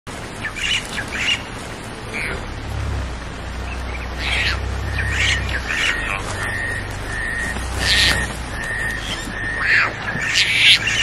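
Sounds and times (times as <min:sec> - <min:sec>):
low steady hum: 0:00.1 - 0:11.0
leopard cubs chirping: 0:03.6 - 0:11.0.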